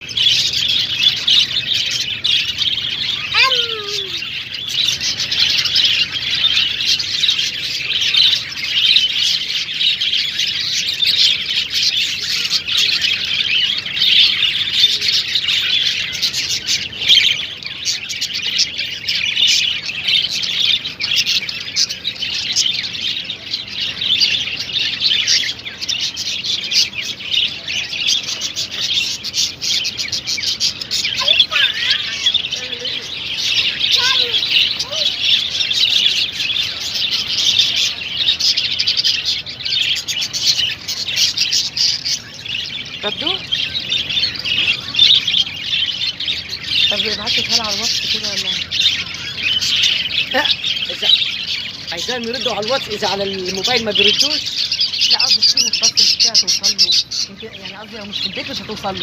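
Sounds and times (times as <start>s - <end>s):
flock of small birds chirping: 0.0s - 59.0s.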